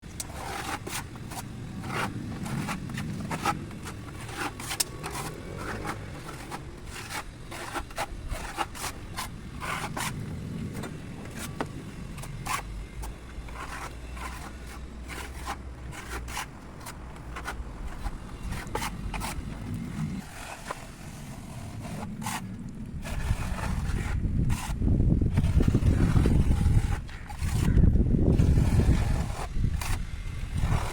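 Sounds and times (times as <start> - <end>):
scraping and clicking: 0.2 - 7.1.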